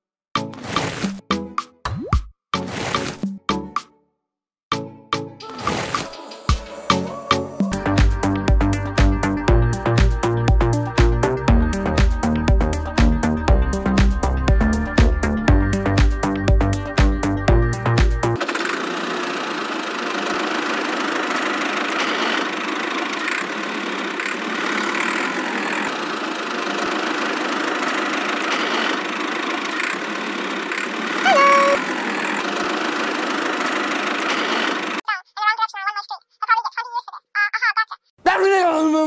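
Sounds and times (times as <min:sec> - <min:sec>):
small motor humming: 0:18.4 - 0:35.0
brief high tone: 0:31.2 - 0:31.9.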